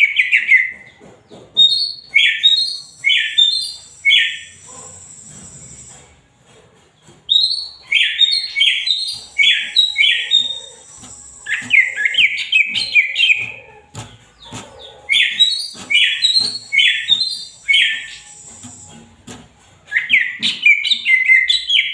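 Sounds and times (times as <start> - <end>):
bird singing sweeping notes: 1.6 - 6.1, 7.3 - 19.2, 19.9 - 21.9
high-pitched trill: 7.4 - 13.6, 15.2 - 19.2.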